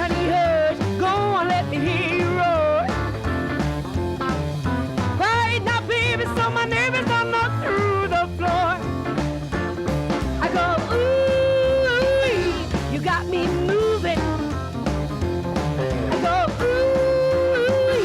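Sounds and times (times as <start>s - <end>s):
person singing: 0.0s - 3.0s, 10.4s - 14.4s, 16.0s - 18.0s
bass line: 0.0s - 18.0s
rhythm and blues song: 0.0s - 18.0s.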